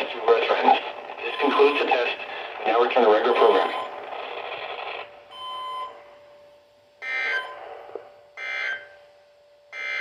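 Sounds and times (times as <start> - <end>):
faint steady hum: 0.0 - 10.0
brief tone: 5.3 - 10.0.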